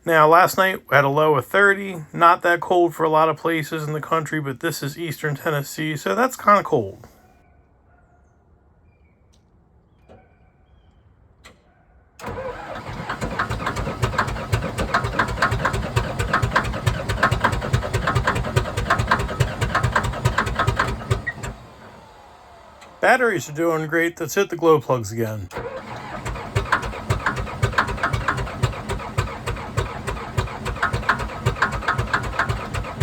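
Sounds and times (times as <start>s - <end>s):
starter cranking diesel engine: 12.2s - 24.3s, 25.4s - 33.0s.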